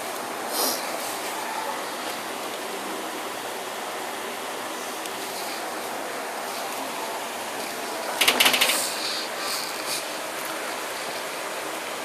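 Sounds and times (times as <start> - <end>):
rattling clatter of clicks: 8.2 - 8.9.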